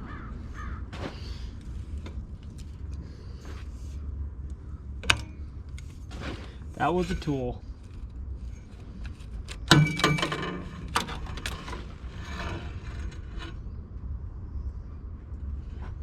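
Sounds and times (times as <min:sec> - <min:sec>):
wrench clicking and scraping: 0:08.8 - 0:12.6
ringing metal clank: 0:09.7 - 0:11.8.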